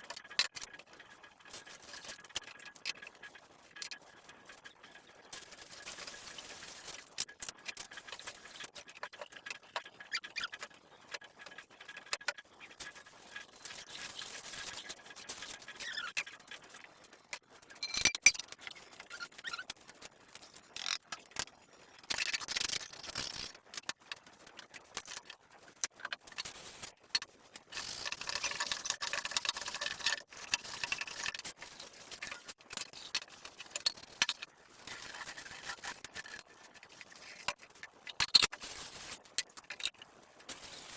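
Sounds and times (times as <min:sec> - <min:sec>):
utensils and dishes clinking: 0:17.8 - 0:18.4.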